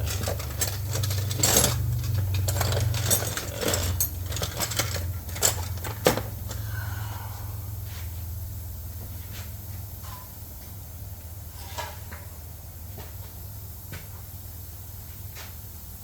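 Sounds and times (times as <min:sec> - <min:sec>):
metal hand tools clinking: 0:00.0 - 0:06.3
steady low hum: 0:00.0 - 0:11.5.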